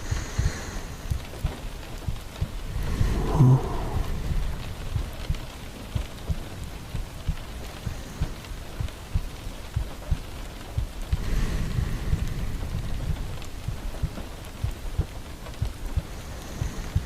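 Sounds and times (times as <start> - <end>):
steady rain: 0.0 - 17.0
thunder rumbling: 0.0 - 17.0
soft low thuds: 1.1 - 7.6.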